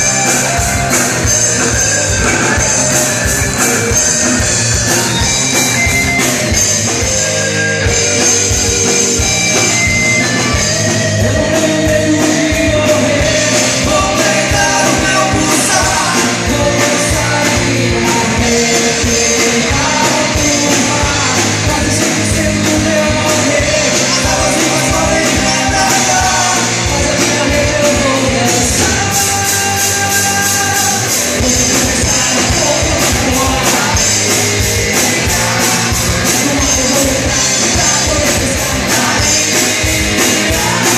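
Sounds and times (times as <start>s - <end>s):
drums: 0.0s - 40.9s
electric guitars: 0.0s - 40.9s
hard-rock band playing: 0.0s - 40.9s
person singing: 10.5s - 40.9s.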